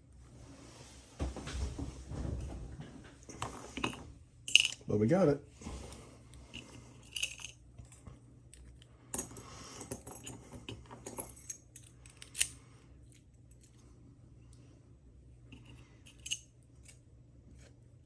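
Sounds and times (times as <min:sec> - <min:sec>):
small metal parts clicking: 0:07.0 - 0:13.7.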